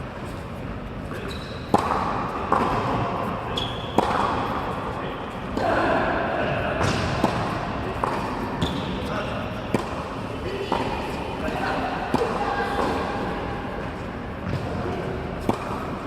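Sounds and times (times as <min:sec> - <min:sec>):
tennis balls hit by rackets: 0:01.1 - 0:05.8, 0:06.4 - 0:13.2, 0:13.8 - 0:16.0.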